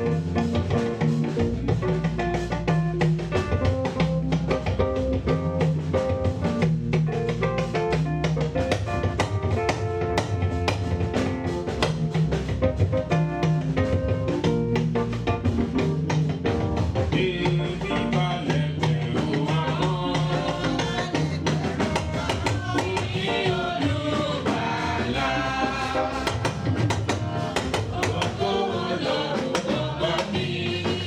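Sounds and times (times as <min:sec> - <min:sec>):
band music with drum kit: 0:00.0 - 0:31.0
bass line: 0:00.0 - 0:31.0
people singing: 0:17.1 - 0:31.0.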